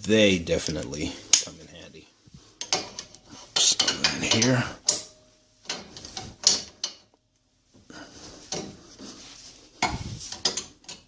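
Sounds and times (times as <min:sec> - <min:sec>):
metal tools clinking and scraping: 0:02.5 - 0:07.1, 0:08.2 - 0:11.0.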